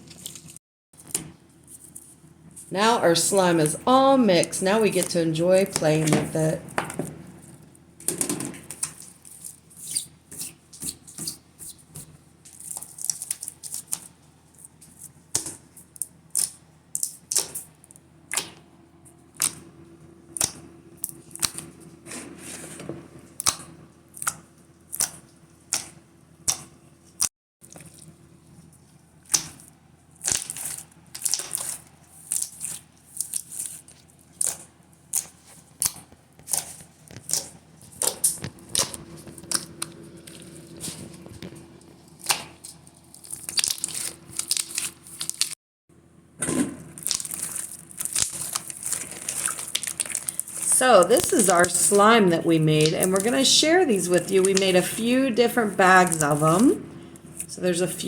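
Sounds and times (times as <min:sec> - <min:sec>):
slime squelching wet clicks and pops: 0:23.4 - 0:26.7, 0:29.2 - 0:33.7.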